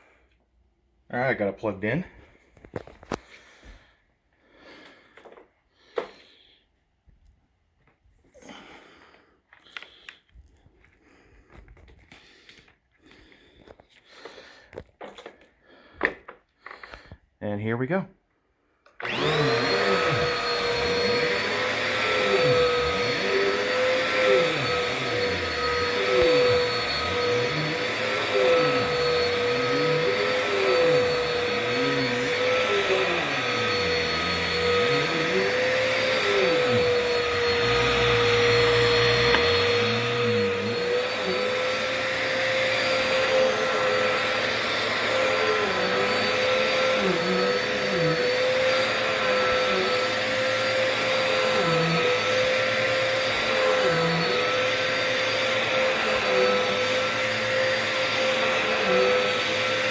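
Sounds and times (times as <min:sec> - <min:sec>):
vacuum cleaner motor whine: 0:19.0 - 0:59.9.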